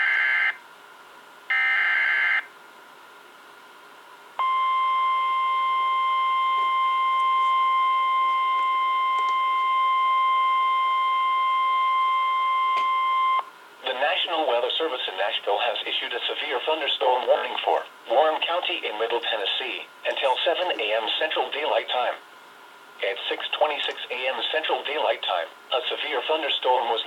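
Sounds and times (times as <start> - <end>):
steady alarm tone: 4.4 - 13.4.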